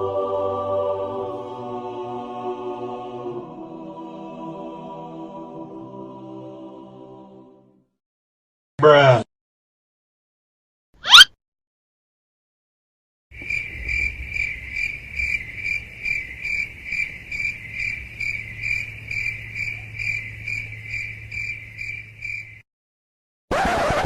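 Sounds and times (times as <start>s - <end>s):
crickets chirping: 13.4s - 22.6s.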